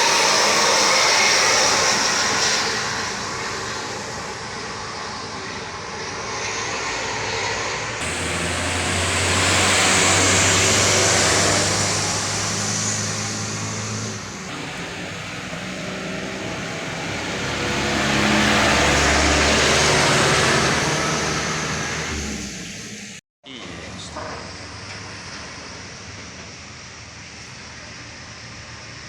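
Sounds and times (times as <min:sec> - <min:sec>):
low engine drone: 0:00.0 - 0:23.2
vehicles passing on road: 0:00.0 - 0:29.0.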